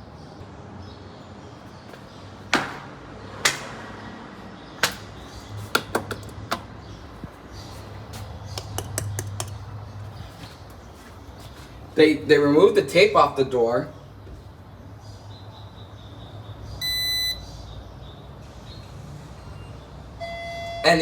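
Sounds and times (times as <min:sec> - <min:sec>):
sharp clicks and knocks: 0:05.7 - 0:06.8, 0:08.5 - 0:09.7.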